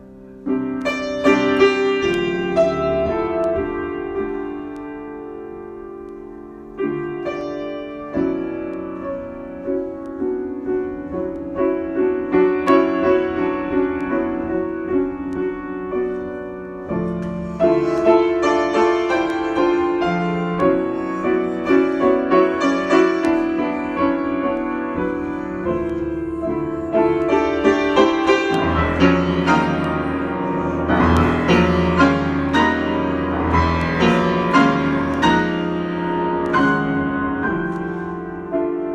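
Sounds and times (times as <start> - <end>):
solo piano improvisation: 0.0 - 38.9.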